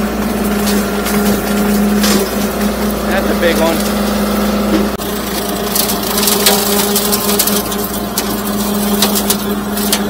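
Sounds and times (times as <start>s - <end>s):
tractor diesel engine running: 0.0s - 10.0s
wood stems cracking and snapping: 5.0s - 10.0s.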